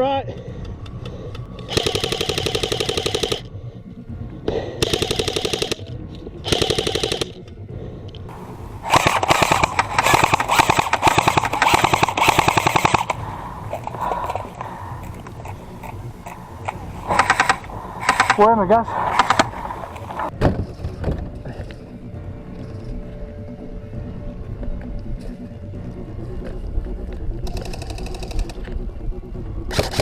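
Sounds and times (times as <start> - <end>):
airsoft rifles firing bursts: 1.7 - 3.5, 4.8 - 5.8, 6.4 - 7.4, 8.3 - 20.3, 29.7 - 30.0.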